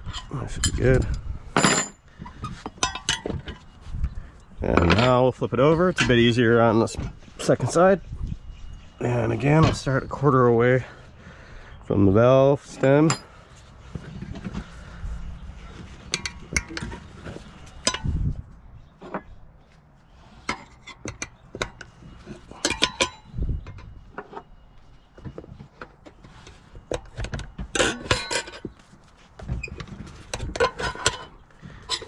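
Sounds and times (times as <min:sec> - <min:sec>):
tire spoons clinking on wheel rim: 0:02.7 - 0:03.7, 0:15.7 - 0:18.2, 0:20.4 - 0:24.6.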